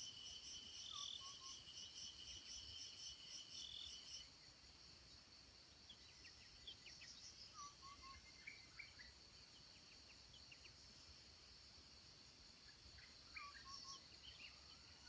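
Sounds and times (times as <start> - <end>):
pulsing insect trill: 0.0 - 4.3
insects droning: 0.0 - 15.0
bird chirps: 0.8 - 1.7.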